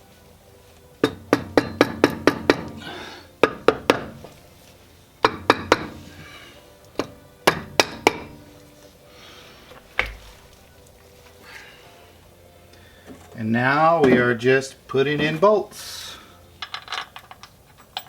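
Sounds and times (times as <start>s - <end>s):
hammer tapping on metal housing: 1.0s - 2.8s, 3.4s - 4.3s, 5.2s - 6.0s, 7.0s - 8.4s.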